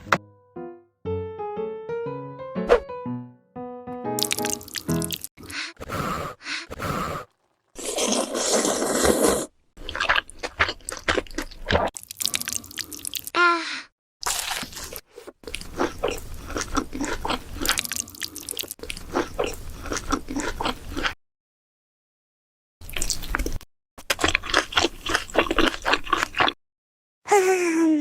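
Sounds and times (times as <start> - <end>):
crunching and chewing food: 4.2 - 13.3, 14.2 - 21.2, 22.8 - 26.6.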